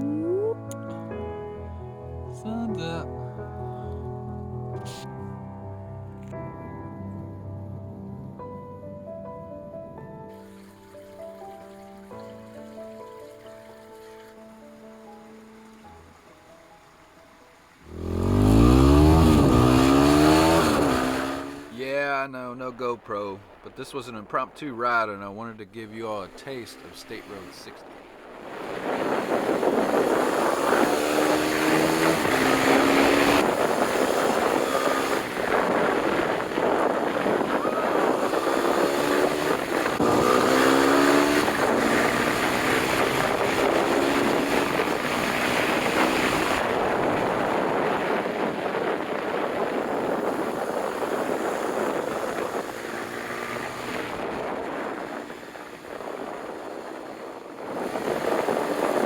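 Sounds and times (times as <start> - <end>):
motorcycle engine accelerating: 0.0 - 1.0, 17.7 - 21.8, 26.3 - 59.0
wind rush on microphone: 17.8 - 21.7, 26.4 - 59.0.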